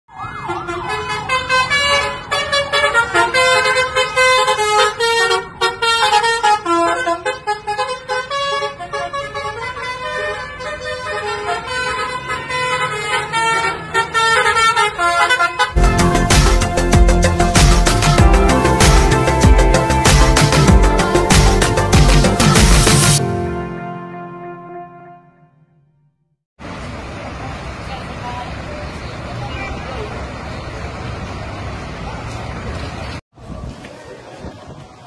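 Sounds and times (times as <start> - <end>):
bus horns playing a melody: 0.4 - 25.9
loud background music: 15.8 - 25.0.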